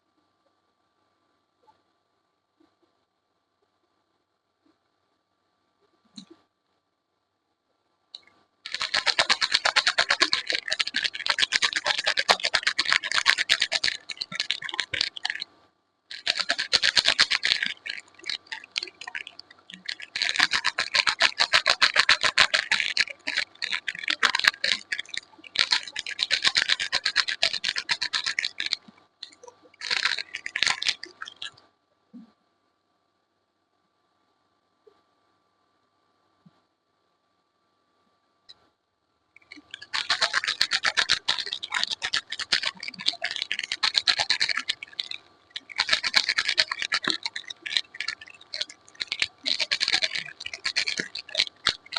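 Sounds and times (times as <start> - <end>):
scratching and scraping on soap: 8.7 - 15.5, 16.1 - 31.6, 39.4 - 51.9.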